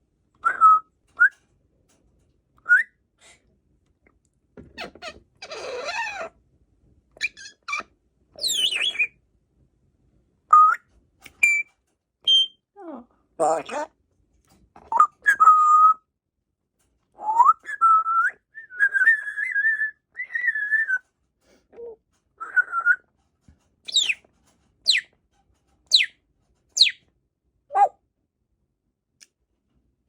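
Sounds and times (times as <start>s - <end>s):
parrot whistling: 8.4s - 9.1s, 23.9s - 24.2s, 25.9s - 26.1s.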